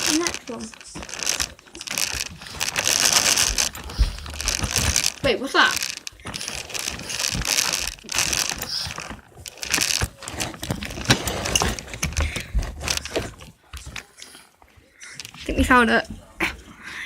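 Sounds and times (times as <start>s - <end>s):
toy car rattling over floor: 0.0s - 13.4s.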